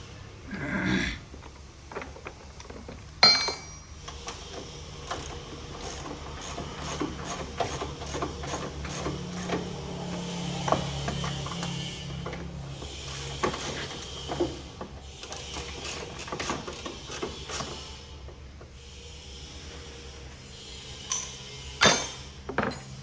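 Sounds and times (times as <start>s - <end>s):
sharp metallic clank: 3.2s - 3.9s, 21.1s - 22.9s.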